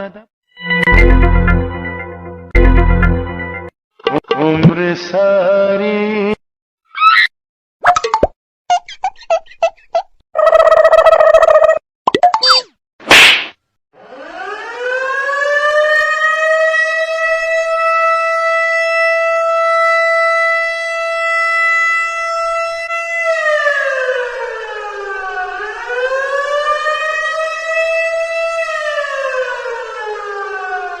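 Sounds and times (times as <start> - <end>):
air-raid siren wailing: 14.0 - 31.0.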